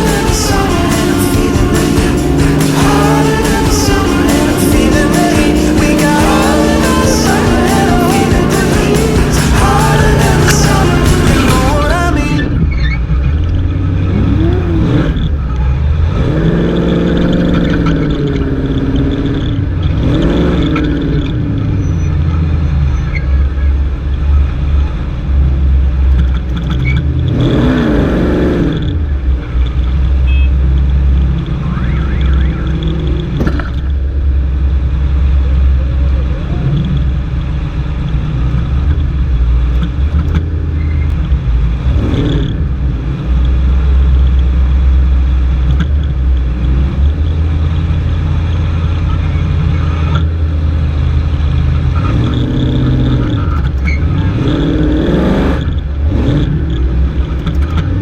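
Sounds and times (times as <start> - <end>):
race vehicle engine revving: 0.0 - 58.0.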